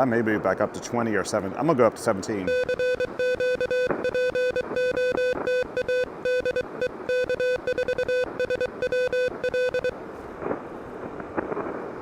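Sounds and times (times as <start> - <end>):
morse code tone: 2.5 - 9.9.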